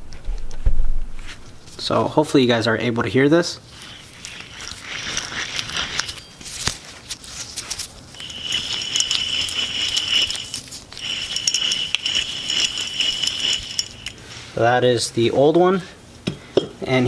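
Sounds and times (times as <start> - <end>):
wheel bearing gritty whir: 3.7 - 14.6
handling clicks and crackles: 3.8 - 14.2.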